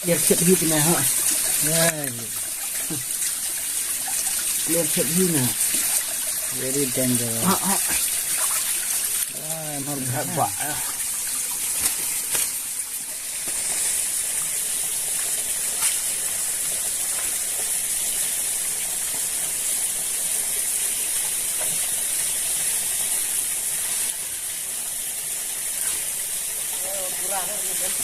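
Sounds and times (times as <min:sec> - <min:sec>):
stream water rushing: 0:00.0 - 0:13.3.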